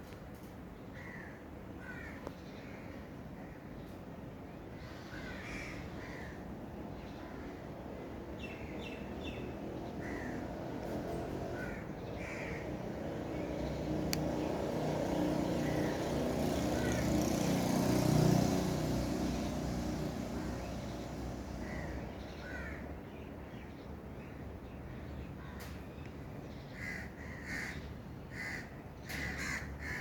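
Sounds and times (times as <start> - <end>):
road vehicle passing by: 7.2 - 22.9.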